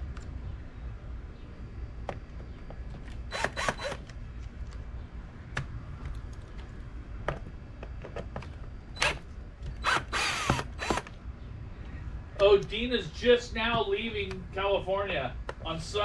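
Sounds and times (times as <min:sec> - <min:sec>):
parts clicking and knocking: 0:05.5 - 0:11.2.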